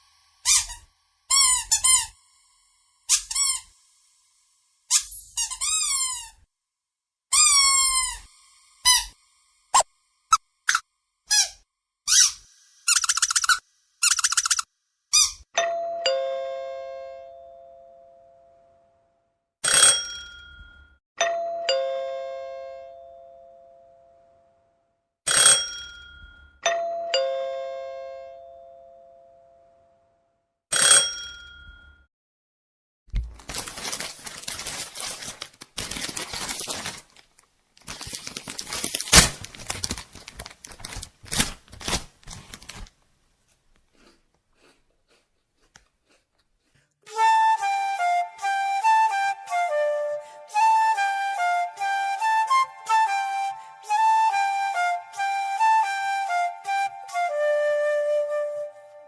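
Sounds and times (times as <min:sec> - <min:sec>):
ding-dong doorbell chime: 0:15.6 - 0:18.8, 0:19.8 - 0:24.2, 0:25.4 - 0:29.8, 0:30.8 - 0:32.1.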